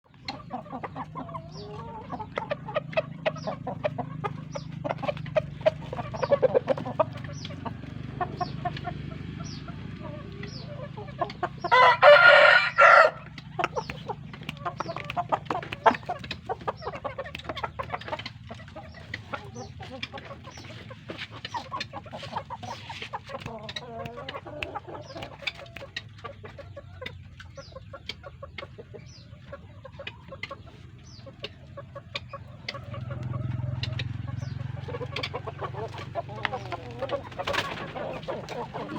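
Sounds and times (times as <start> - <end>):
chickens clucking: 0.0 - 38.9
rooster crowing: 11.7 - 13.3.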